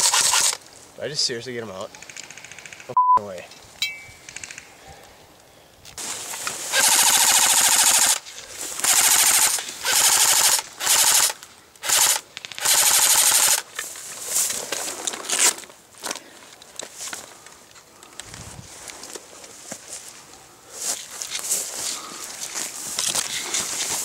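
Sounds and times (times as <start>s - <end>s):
airsoft guns firing bursts: 0.0s - 0.6s, 6.7s - 8.2s, 8.8s - 13.7s.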